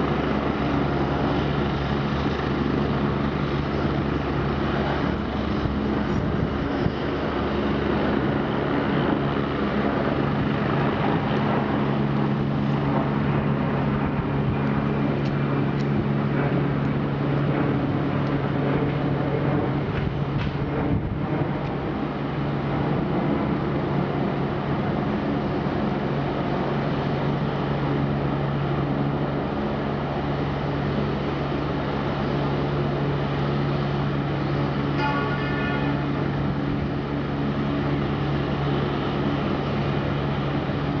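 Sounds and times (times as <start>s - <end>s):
helicopter engines and rotors: 0.0s - 41.0s.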